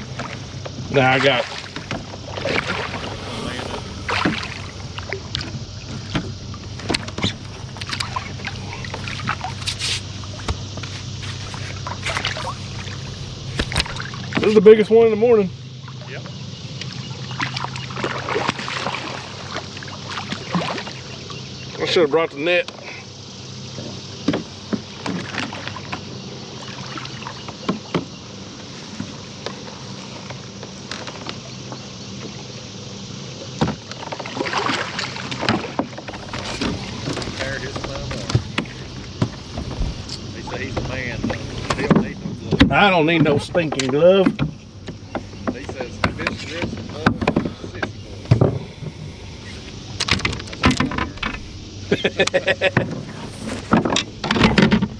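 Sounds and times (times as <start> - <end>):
short water splash: 0.0 - 14.5
steady low hum: 0.0 - 33.6, 34.6 - 54.9.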